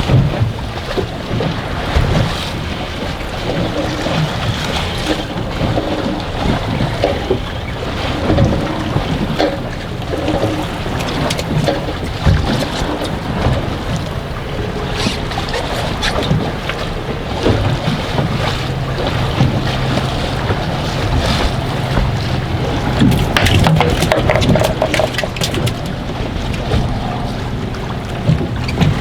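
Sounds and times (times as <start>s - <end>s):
strong wind buffeting microphone: 0.0s - 29.0s
waves slapping against boat: 0.0s - 29.0s
sharp knocks: 23.0s - 25.9s.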